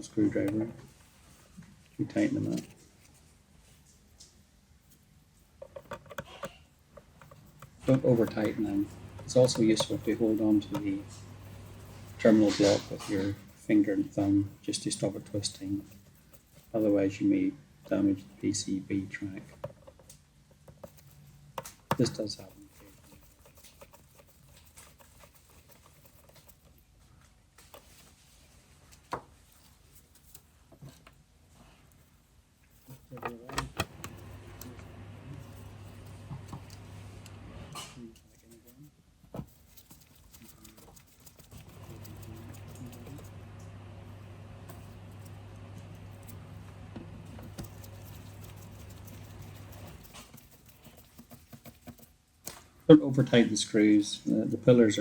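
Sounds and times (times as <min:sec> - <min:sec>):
steady low hum: 0:07.0 - 0:19.1, 0:33.3 - 0:38.9, 0:39.9 - 0:51.2.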